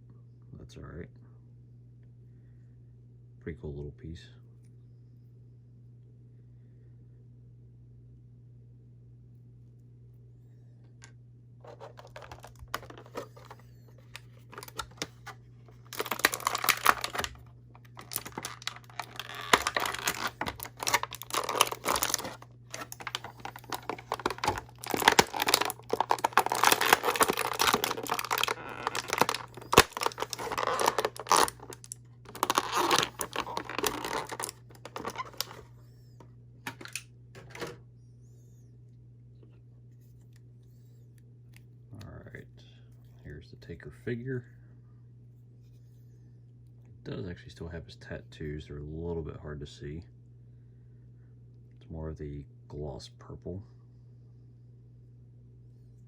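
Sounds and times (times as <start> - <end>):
plastic clicks and crackles: 11.6 - 35.7, 36.7 - 37.8
plastic packaging crinkling: 11.6 - 35.7, 36.7 - 37.7.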